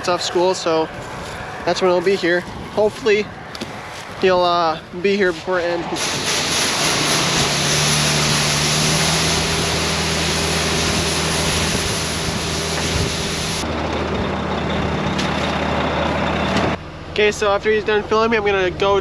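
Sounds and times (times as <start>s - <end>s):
machine engines running: 0.0s - 19.0s
corn pouring from auger: 6.0s - 13.6s.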